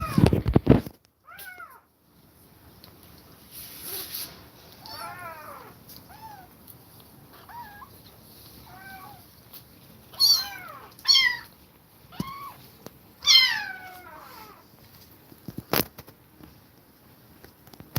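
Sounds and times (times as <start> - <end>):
kittens meowing: 4.8 - 6.6, 7.3 - 8.0, 8.6 - 9.4, 10.1 - 14.7.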